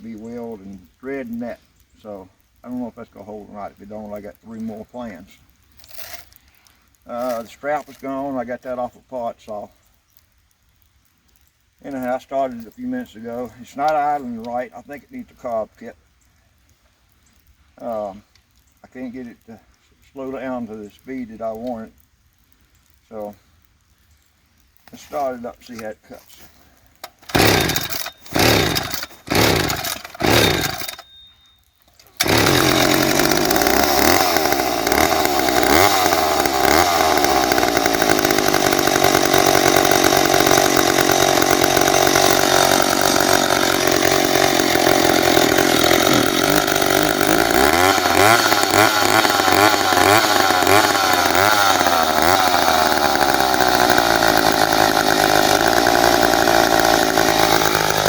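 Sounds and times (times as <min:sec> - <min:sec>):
chainsaw starting and running: 0:05.8 - 0:06.4, 0:27.0 - 0:31.1, 0:32.0 - 0:58.0.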